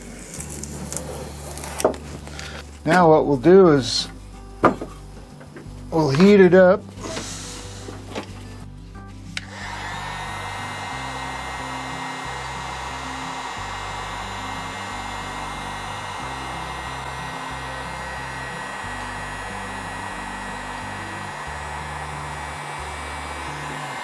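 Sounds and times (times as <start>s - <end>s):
blower switch click: 9.4s - 9.6s
hot-air blower running: 9.4s - 24.0s.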